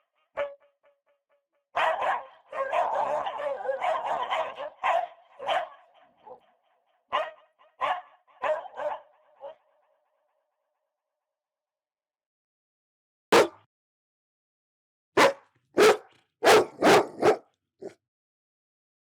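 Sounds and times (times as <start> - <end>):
dog barking aggressively: 1.8 - 6.4, 13.3 - 13.6, 15.2 - 18.0.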